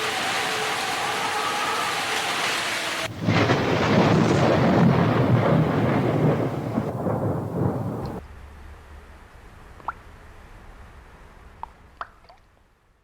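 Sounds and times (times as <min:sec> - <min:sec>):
rain falling: 0:00.0 - 0:08.2
thunder rumbling: 0:03.0 - 0:08.2.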